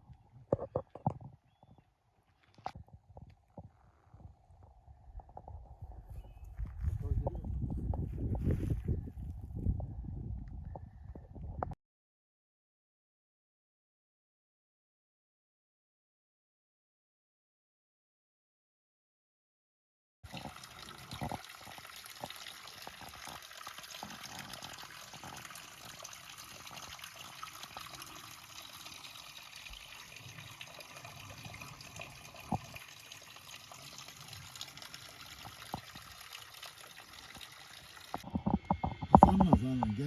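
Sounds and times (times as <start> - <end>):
flowing water rushing: 20.3 - 40.0.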